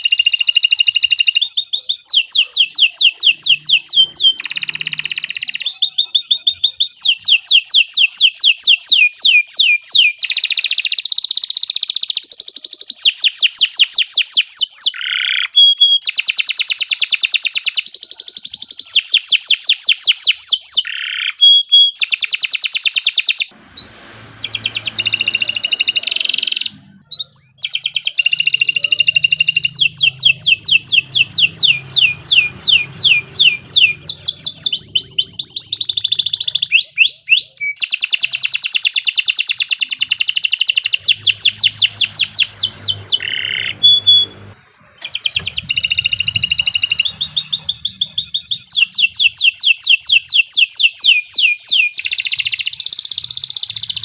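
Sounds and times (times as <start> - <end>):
canary singing fast trills: 0.0 - 54.0.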